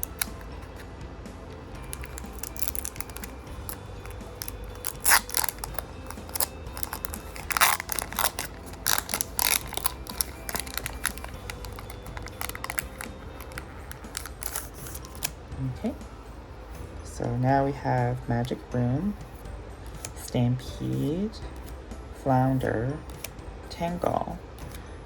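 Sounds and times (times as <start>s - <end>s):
foil wrapper crinkling and tearing: 0.0s - 0.5s, 1.8s - 15.4s.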